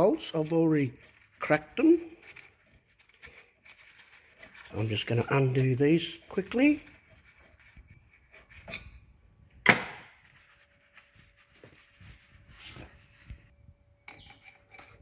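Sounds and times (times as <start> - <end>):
hand tools rubbing and clicking: 14.1 - 15.0.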